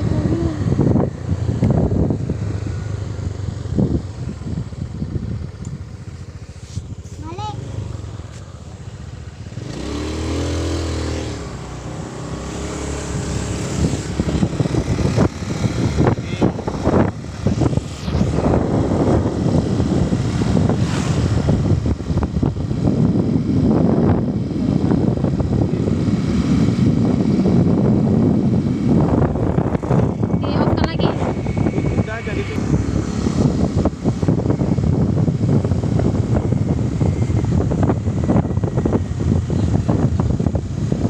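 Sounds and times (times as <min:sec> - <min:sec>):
motor vehicle running: 0:00.0 - 0:41.0
loud uneven rushing noise: 0:12.9 - 0:21.6.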